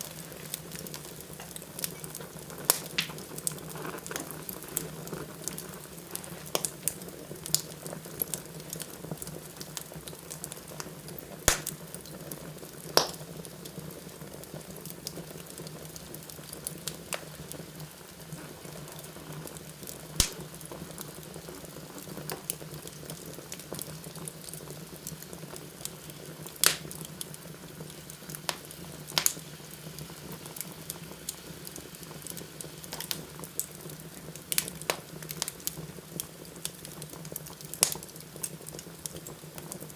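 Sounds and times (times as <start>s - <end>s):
fire flame rushing: 0.0s - 9.0s
fire crackling and popping: 0.0s - 39.9s.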